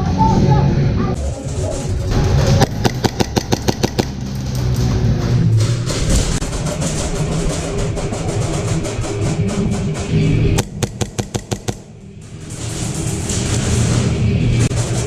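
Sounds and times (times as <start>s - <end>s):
sharp clicks: 2.6s - 4.5s, 10.6s - 11.9s.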